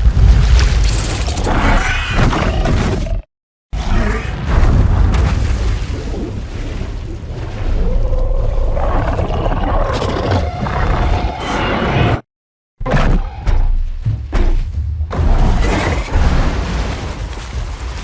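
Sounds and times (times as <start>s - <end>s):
monster roars and growls: 1.3s - 3.2s, 7.6s - 12.2s.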